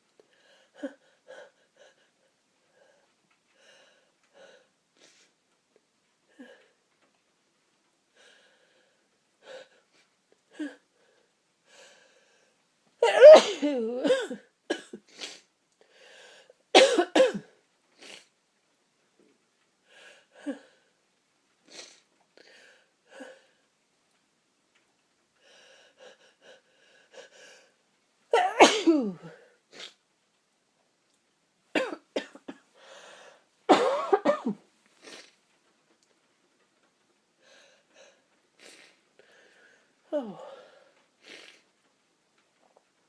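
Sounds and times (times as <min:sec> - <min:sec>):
person sneezing: 0:13.0 - 0:14.4, 0:28.4 - 0:30.0
faint sniffs and breaths: 0:34.9 - 0:35.4, 0:37.4 - 0:41.7.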